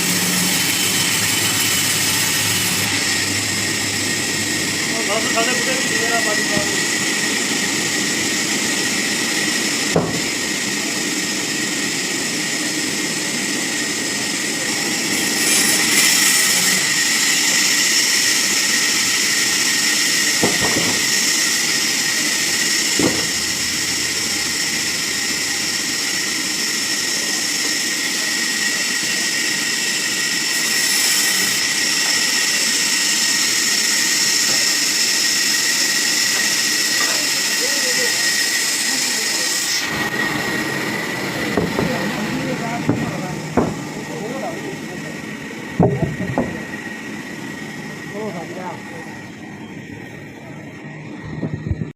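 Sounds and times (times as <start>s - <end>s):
sawmill machinery whining: 0.0s - 51.9s
sharp knocks: 10.0s - 10.3s, 20.4s - 21.1s, 23.0s - 23.4s, 42.9s - 43.8s, 45.8s - 46.6s.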